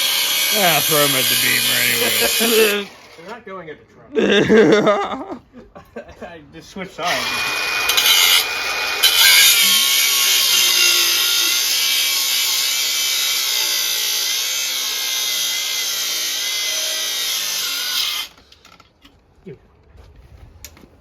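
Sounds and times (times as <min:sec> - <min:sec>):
angle grinder cutting steel: 0:00.0 - 0:03.4, 0:07.0 - 0:18.4.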